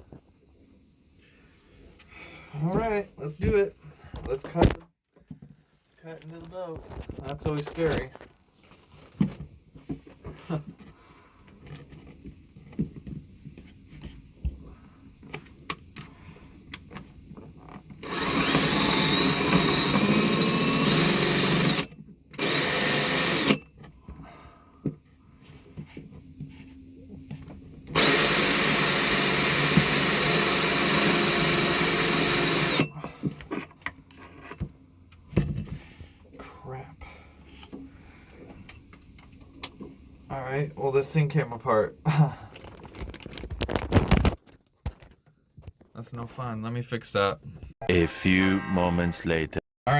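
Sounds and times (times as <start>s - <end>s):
power drill whining: 17.8s - 23.6s, 27.9s - 33.0s.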